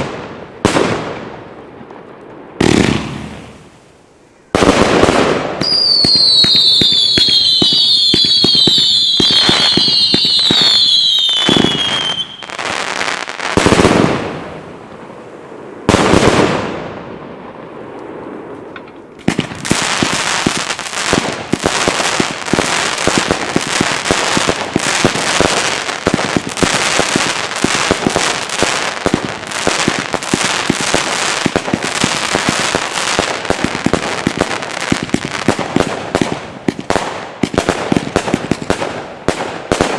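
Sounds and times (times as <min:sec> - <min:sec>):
firework bangs: 0:02.4 - 0:03.9, 0:04.5 - 0:14.7, 0:15.8 - 0:17.1, 0:17.8 - 0:39.9
rapid firework crackling: 0:02.6 - 0:03.8, 0:04.6 - 0:14.4, 0:19.2 - 0:39.9
whistling firework shots: 0:04.5 - 0:14.3.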